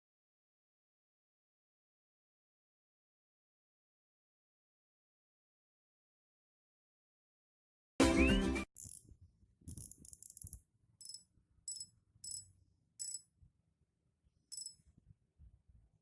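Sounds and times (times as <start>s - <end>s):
fishing reel rattling: 8.8s - 9.1s, 9.7s - 12.4s, 13.0s - 13.2s, 14.5s - 14.8s
sharp reel clicks: 8.8s - 9.1s, 9.7s - 12.4s, 13.0s - 13.2s, 14.5s - 14.8s.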